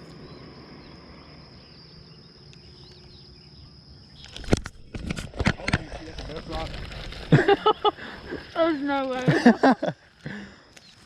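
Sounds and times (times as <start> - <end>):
soft bird chirps: 0.0 - 4.6, 10.5 - 11.0.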